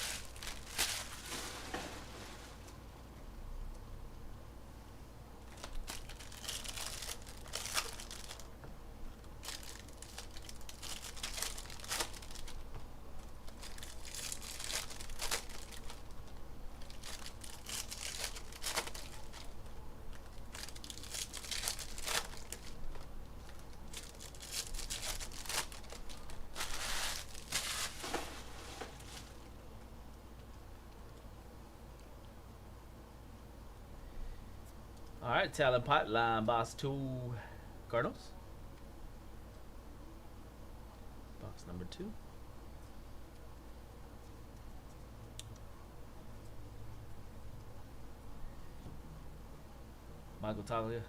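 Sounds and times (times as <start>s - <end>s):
plastic wrapping tearing and crinkling: 0.0s - 1.8s, 5.5s - 8.5s, 9.2s - 29.4s.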